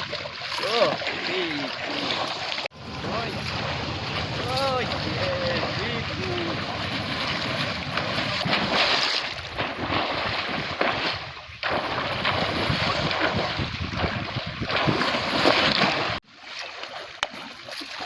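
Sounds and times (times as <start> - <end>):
rushing churning water: 0.0 - 18.0
wind buffeting microphone: 2.7 - 8.8, 9.4 - 16.2.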